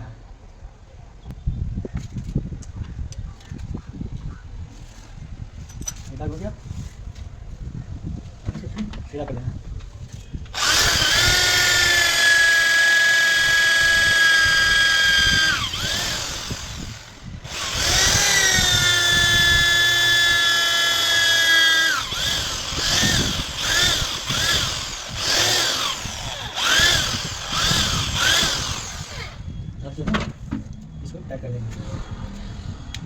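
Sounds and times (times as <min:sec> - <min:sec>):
electric power drill running: 0:10.5 - 0:29.5.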